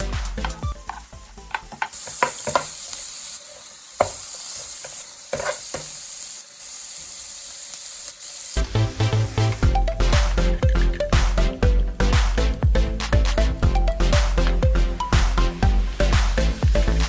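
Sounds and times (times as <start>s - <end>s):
background music: 0.0s - 2.0s, 8.6s - 17.0s
shrimp sizzling in a pan: 0.3s - 8.6s.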